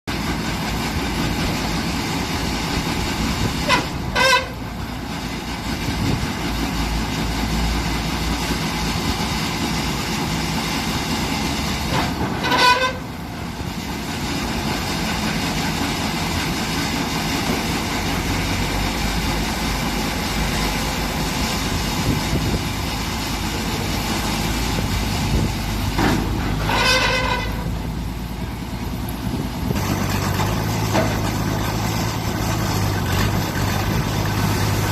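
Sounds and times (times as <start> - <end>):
backhoe running: 0.1 - 34.9
high-pitched horn tones: 3.6 - 4.7, 11.9 - 13.2, 26.6 - 27.9.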